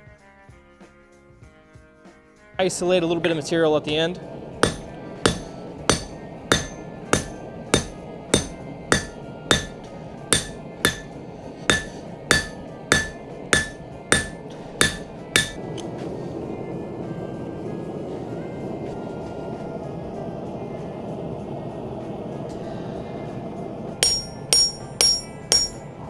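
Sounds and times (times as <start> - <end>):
hammer striking steel on anvil: 4.6 - 15.8, 24.0 - 26.0.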